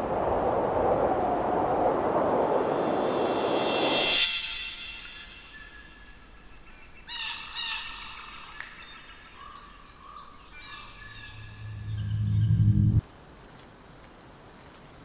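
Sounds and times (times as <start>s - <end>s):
loud rush of noise: 0.0s - 5.7s, 11.3s - 13.0s
small birds chirping: 5.5s - 12.1s.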